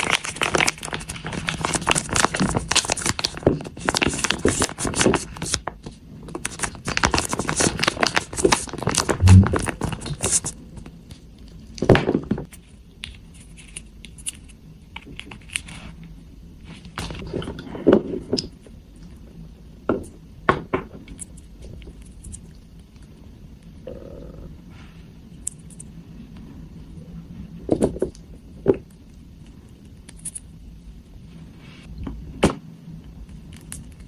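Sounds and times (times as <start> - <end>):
plastic packaging crinkling and tearing: 0.0 - 10.6.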